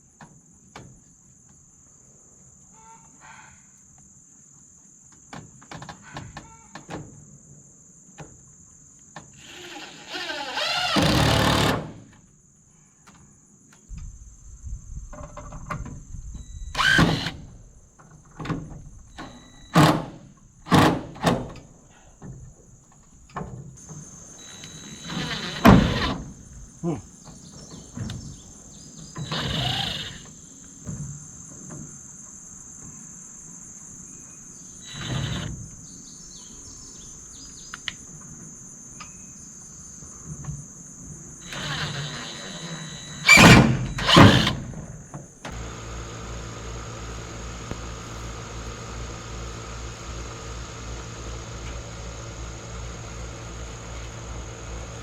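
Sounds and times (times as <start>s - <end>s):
crickets chirring: 0.0s - 55.0s
noisy construction bursts: 16.6s - 17.6s, 23.8s - 27.0s, 29.2s - 30.4s, 41.4s - 44.9s, 45.5s - 55.0s.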